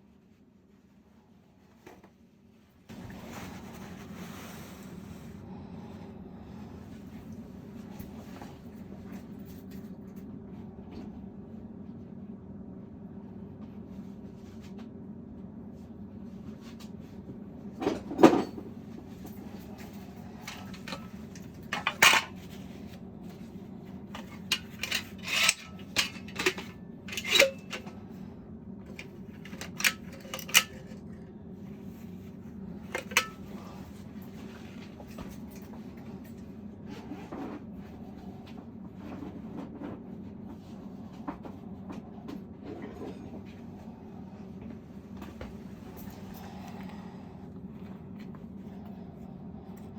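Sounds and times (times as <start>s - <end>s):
steady low hum: 0.0s - 49.9s
tools clinking and knocking: 20.4s - 22.5s, 24.1s - 28.0s, 28.9s - 31.0s, 32.9s - 33.6s.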